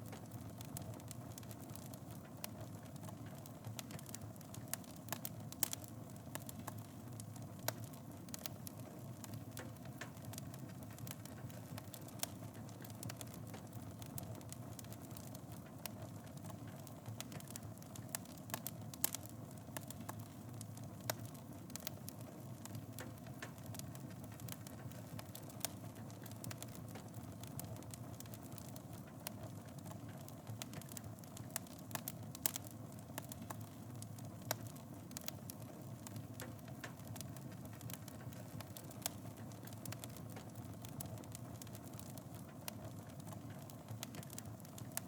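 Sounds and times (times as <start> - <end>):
fire crackles and pops: 0.0 - 45.0
low rumble of flames: 0.0 - 45.0.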